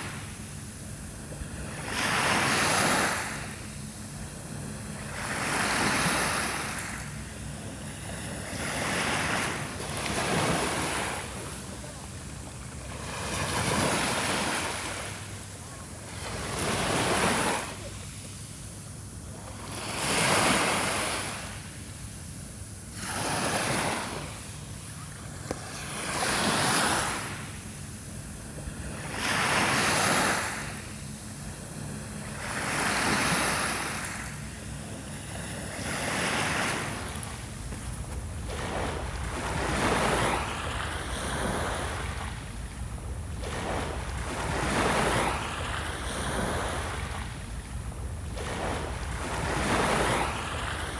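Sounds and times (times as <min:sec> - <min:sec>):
steady low rumble: 0:00.0 - 0:16.5, 0:27.3 - 0:50.9
small waves washing up shore: 0:00.0 - 0:18.6, 0:22.8 - 0:50.9.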